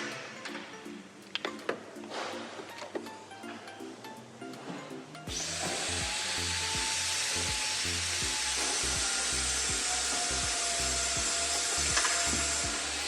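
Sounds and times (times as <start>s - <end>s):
background music with steady beat: 0.0s - 13.0s
power tool hissing and whining: 5.3s - 13.0s.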